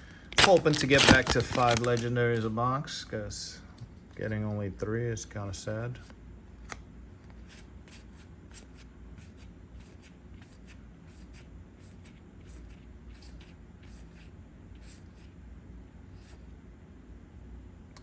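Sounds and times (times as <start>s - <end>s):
cards being flipped through: 0.3s - 2.6s, 6.5s - 8.8s.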